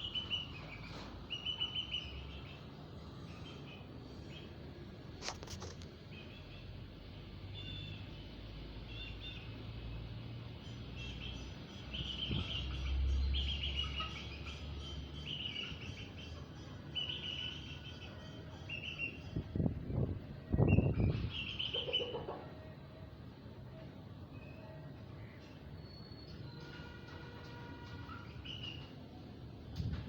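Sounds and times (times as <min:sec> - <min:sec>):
chicks cheeping: 0:00.0 - 0:04.6, 0:10.6 - 0:22.6, 0:28.0 - 0:28.9.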